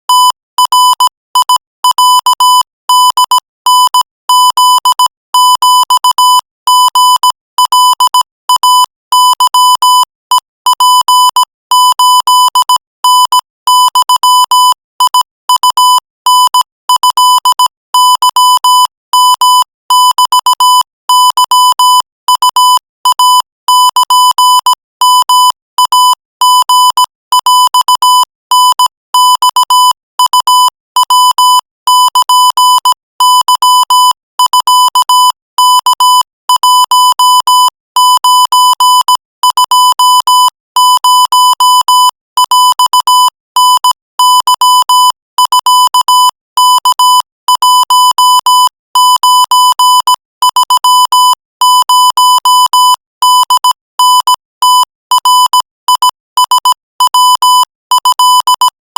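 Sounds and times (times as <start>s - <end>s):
morse code beeps: 0.1s - 58.8s.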